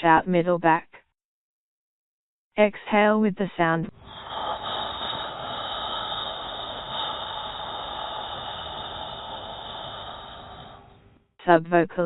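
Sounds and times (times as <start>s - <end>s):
slow whispered exhalation: 3.9s - 11.1s.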